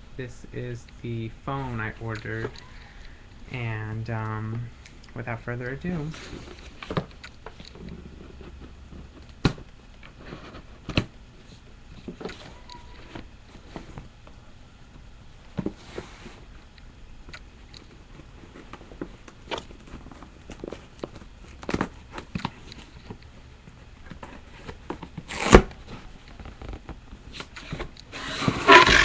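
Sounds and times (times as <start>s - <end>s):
package rustling and scraping: 24.2s - 29.0s.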